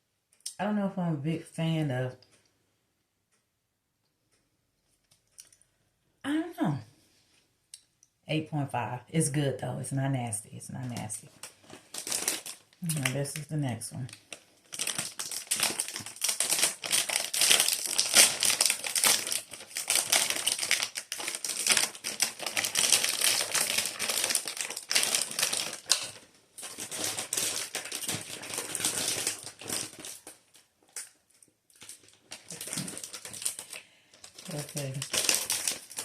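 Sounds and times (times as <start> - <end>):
plastic packaging crinkling: 10.9 - 36.0.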